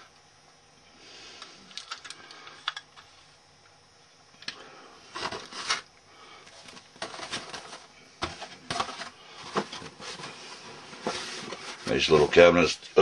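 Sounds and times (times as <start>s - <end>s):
cardboard and plastic rustling: 5.1s - 13.0s.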